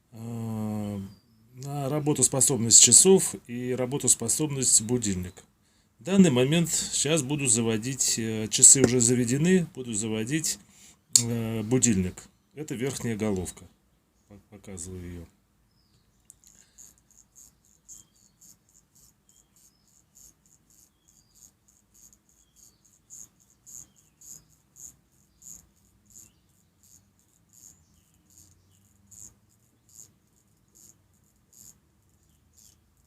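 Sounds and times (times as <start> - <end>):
watch crown ratchet clicking: 29.9 - 31.8.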